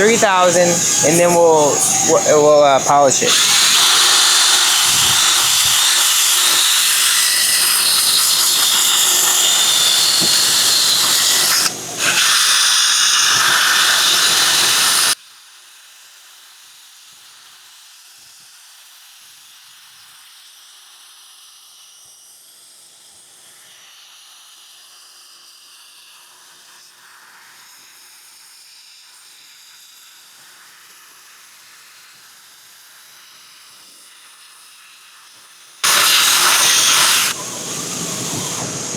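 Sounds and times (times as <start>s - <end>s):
drill sanding wet paint: 0.0s - 15.2s, 35.8s - 38.9s.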